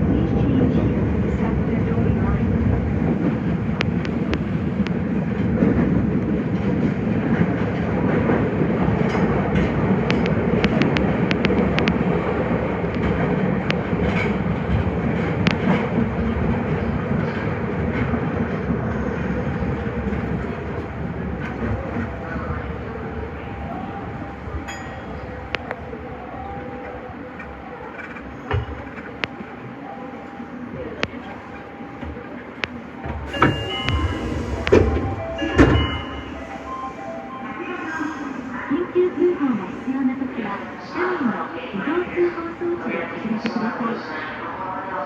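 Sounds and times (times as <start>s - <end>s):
train wheels rumbling on rails: 0.0s - 41.4s.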